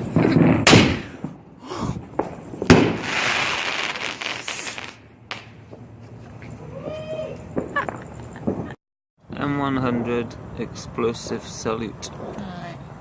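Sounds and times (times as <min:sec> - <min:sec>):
firework bangs: 0:00.0 - 0:05.9, 0:07.4 - 0:08.8
hissing firework crackle: 0:02.1 - 0:05.6.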